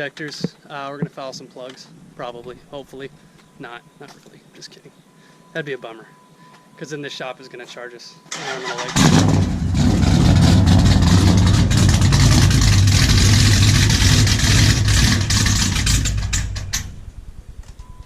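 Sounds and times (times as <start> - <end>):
loud car engine running: 9.0 - 17.8.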